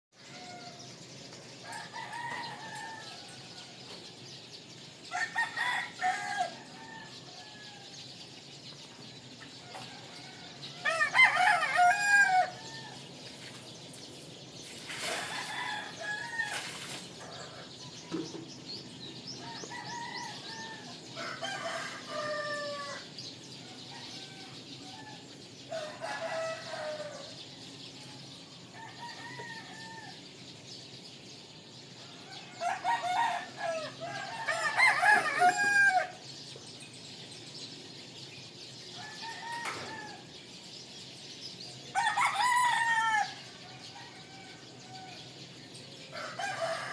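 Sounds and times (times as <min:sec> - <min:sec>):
small birds chirping: 0:00.1 - 0:46.9
roosters crowing: 0:00.2 - 0:13.9, 0:14.6 - 0:46.9.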